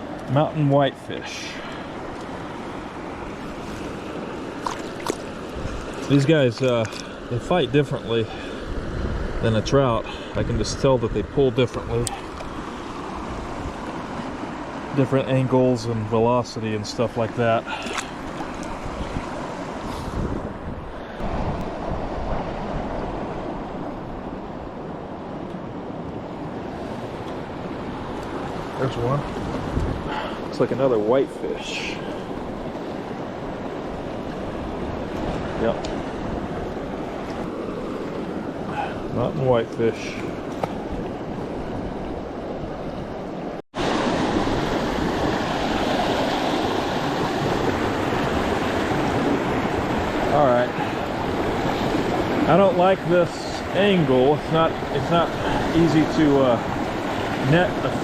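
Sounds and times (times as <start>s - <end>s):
flowing river water: 0.0s - 58.0s
wind on microphone: 2.9s - 7.0s, 8.3s - 14.4s, 17.7s - 30.4s.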